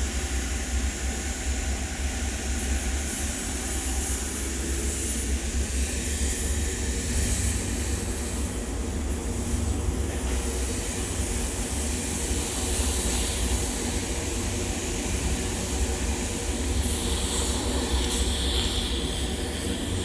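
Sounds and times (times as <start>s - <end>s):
welding hiss: 11.0s - 20.0s.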